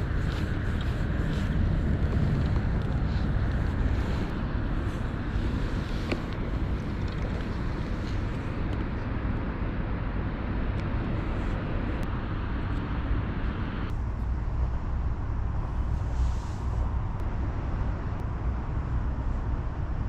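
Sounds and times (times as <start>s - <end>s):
low rumble: 0.0s - 9.0s.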